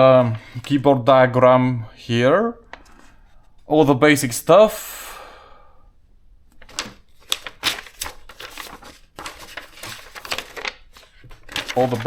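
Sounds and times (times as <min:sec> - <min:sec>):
paper and plastic handling: 0:06.5 - 0:12.0.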